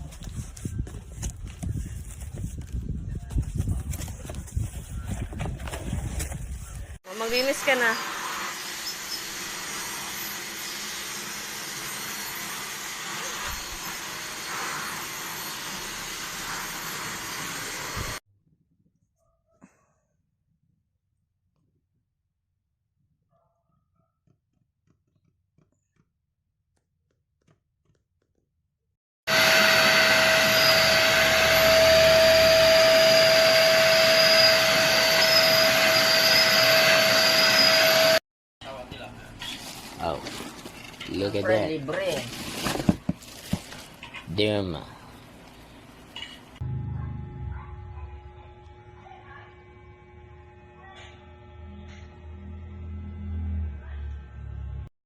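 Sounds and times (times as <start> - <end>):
stick vacuum cleaner running: 7.4 - 18.2, 29.3 - 38.2.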